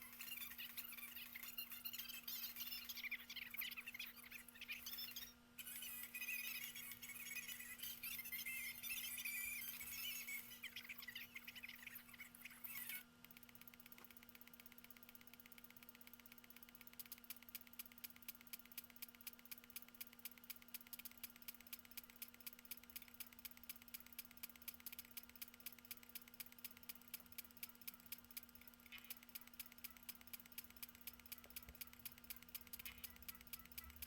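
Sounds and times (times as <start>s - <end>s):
faint steady hum: 0.0s - 34.0s
faint regular ticking: 13.2s - 34.0s.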